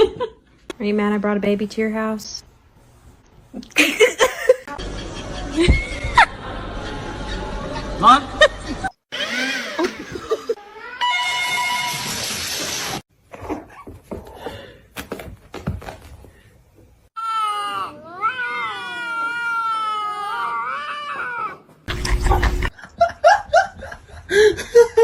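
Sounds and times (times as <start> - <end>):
cat yowling: 17.2 - 21.7.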